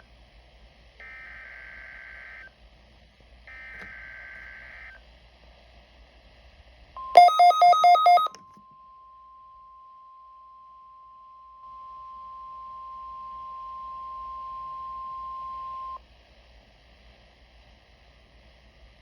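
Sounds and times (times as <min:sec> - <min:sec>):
loud rapid beeps: 0:07.2 - 0:08.3
steady high tone: 0:07.2 - 0:08.3.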